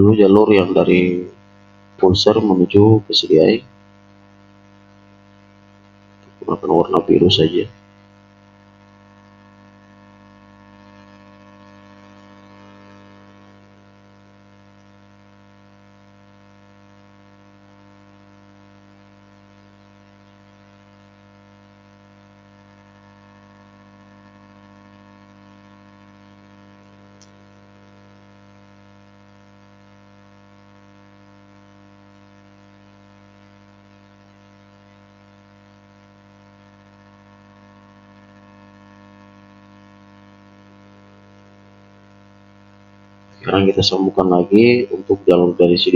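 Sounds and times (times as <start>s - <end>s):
electrical hum and buzz: 0.0s - 45.9s
small click: 27.1s - 27.4s.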